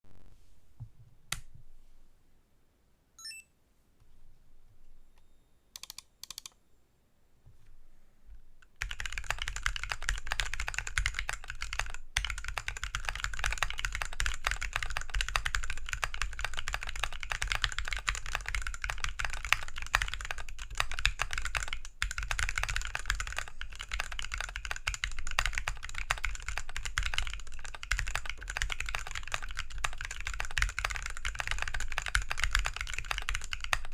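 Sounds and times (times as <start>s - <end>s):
mechanical keyboard typing: 5.8s - 6.6s, 8.8s - 33.9s.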